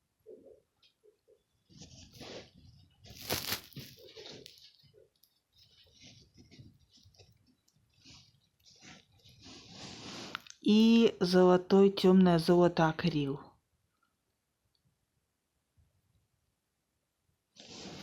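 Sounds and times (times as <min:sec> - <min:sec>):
rustling and crinkling materials: 0:01.6 - 0:10.7, 0:17.6 - 0:18.0.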